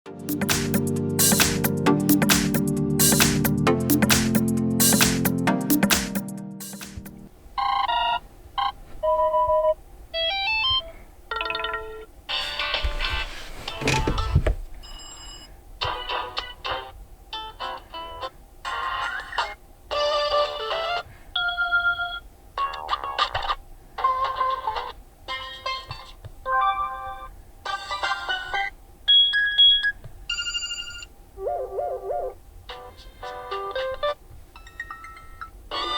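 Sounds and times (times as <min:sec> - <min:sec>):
phone ringtone melodies: 0:11.3 - 0:12.1, 0:29.1 - 0:33.6, 0:34.6 - 0:35.9
electronic beep ringtone: 0:29.1 - 0:31.1
electronic music ringtone: 0:34.6 - 0:35.9.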